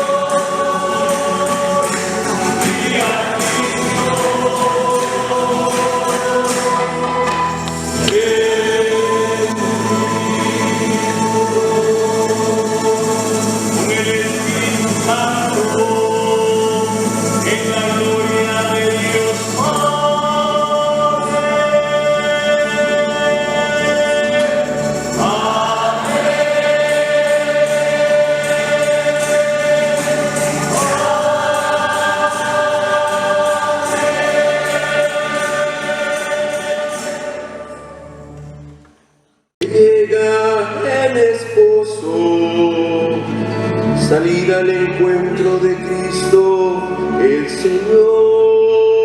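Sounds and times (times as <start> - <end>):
church choir singing a hymn: 0.0 - 38.7.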